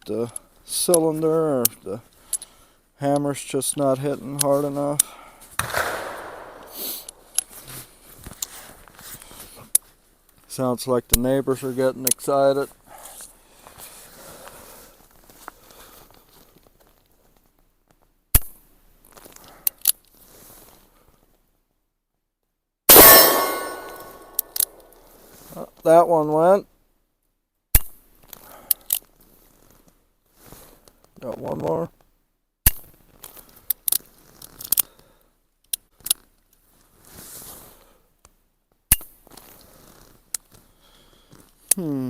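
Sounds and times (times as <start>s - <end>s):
loud gunshot ringing out: 5.6s - 7.2s, 22.9s - 24.6s
revolver hammer snapping: 5.6s - 7.3s, 22.9s - 24.8s
soft rustle: 7.0s - 10.5s, 12.6s - 18.1s, 19.0s - 21.5s, 29.0s - 32.1s, 33.1s - 34.7s, 36.2s - 38.1s, 39.2s - 41.7s.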